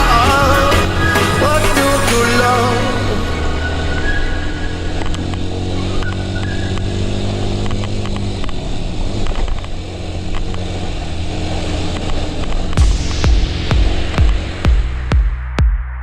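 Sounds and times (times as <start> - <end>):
dirt bike engine running: 0.0 - 15.7
heavy thump: 12.8 - 15.9.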